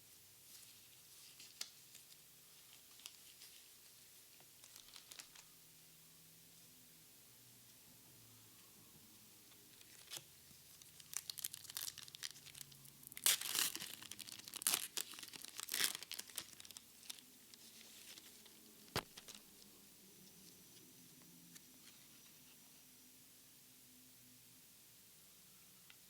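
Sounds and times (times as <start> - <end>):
foil wrapper tearing and crinkling: 4.6 - 5.4, 9.8 - 17.2.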